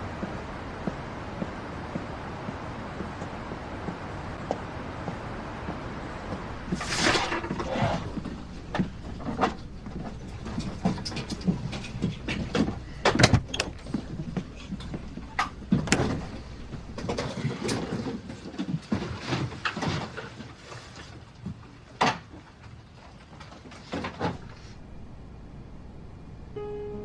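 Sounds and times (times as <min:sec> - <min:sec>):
steady low hum: 0:00.0 - 0:17.8, 0:24.4 - 0:27.0
knocks and clatters: 0:00.1 - 0:20.6.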